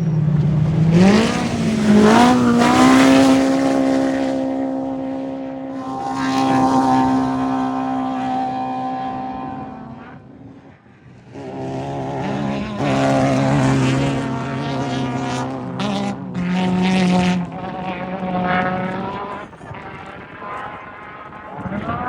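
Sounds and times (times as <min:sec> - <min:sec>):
race vehicle engines revving: 0:00.0 - 0:22.0.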